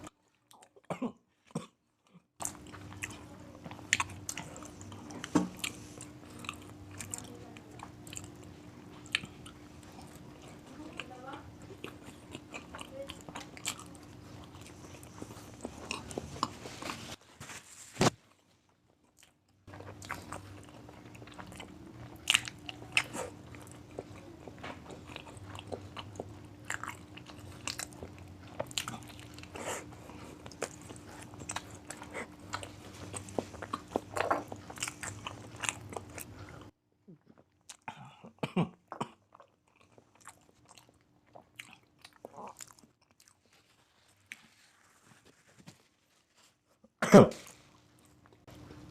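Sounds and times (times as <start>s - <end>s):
steady low hum: 2.4s - 17.4s, 19.7s - 36.8s.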